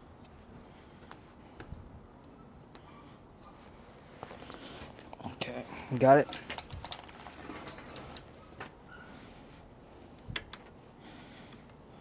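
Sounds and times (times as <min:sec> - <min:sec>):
tools and bicycle parts clicking: 0:06.2 - 0:08.3.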